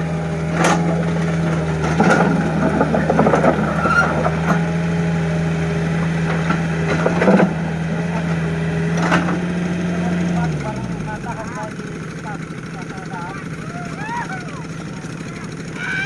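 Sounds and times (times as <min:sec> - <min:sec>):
engine humming: 0:00.0 - 0:16.0
knocks and clanks: 0:00.5 - 0:04.8, 0:06.0 - 0:09.6.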